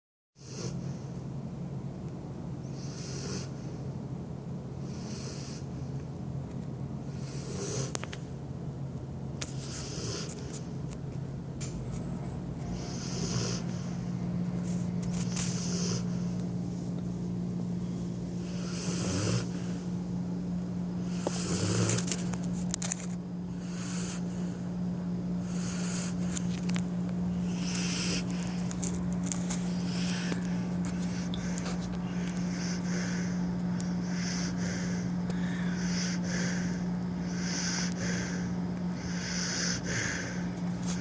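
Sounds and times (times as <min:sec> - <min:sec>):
dog snoring: 0:00.4 - 0:01.1, 0:02.7 - 0:03.8, 0:04.8 - 0:05.8, 0:07.1 - 0:08.1, 0:09.4 - 0:10.7, 0:12.6 - 0:14.0, 0:15.1 - 0:16.3, 0:18.4 - 0:19.8, 0:21.0 - 0:22.3, 0:23.5 - 0:24.6, 0:25.4 - 0:26.5, 0:27.3 - 0:28.7, 0:29.5 - 0:41.0.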